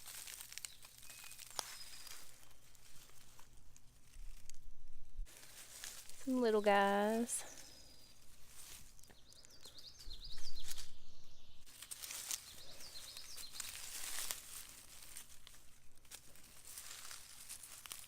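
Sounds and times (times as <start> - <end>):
hands scraping through soil: 0.0 - 4.6, 5.3 - 9.1, 11.7 - 18.0
birds chirping: 6.3 - 14.0.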